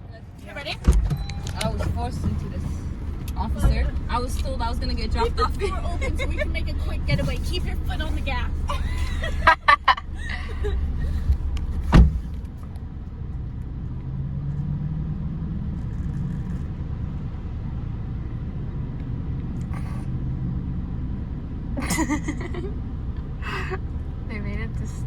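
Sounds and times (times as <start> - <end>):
car engine driving: 0.0 - 25.0
sharp thump: 11.3 - 12.4.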